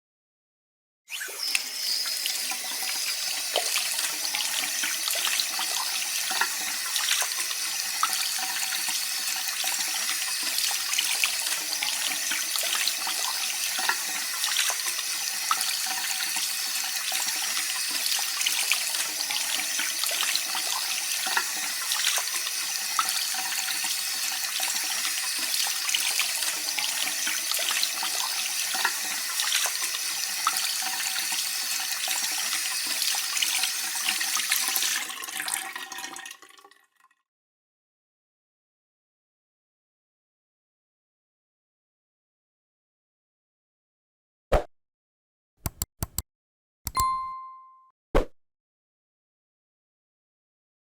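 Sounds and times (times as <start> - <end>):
water tap running into sink: 1.2 - 36.9.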